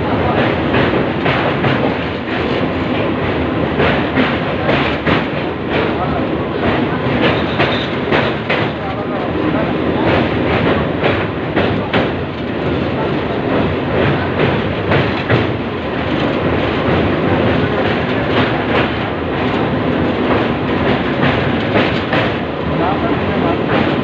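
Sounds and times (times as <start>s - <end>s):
train rumbling on track: 0.0s - 24.0s
wheels clacking over rail joints: 6.6s - 24.0s.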